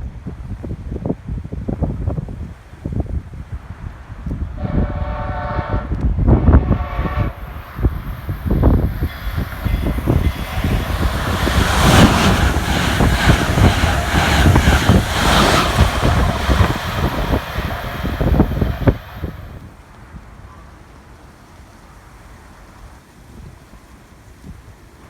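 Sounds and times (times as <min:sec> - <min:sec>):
wind buffeting microphone: 0:00.0 - 0:20.4
train passing at speed: 0:03.6 - 0:20.2.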